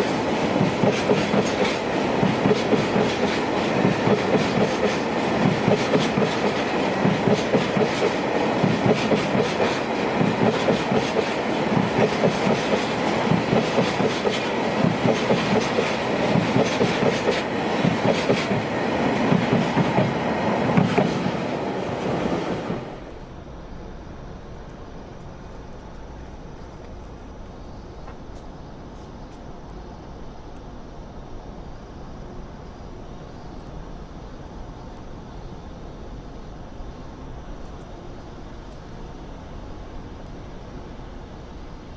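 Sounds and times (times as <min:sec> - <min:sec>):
train wheels clacking over rail joints: 0:00.0 - 0:23.0
train rumble: 0:00.0 - 0:29.8.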